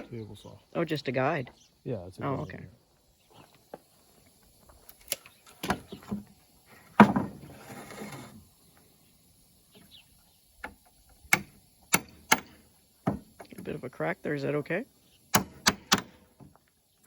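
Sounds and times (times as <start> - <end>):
board scraping: 6.0 - 8.4.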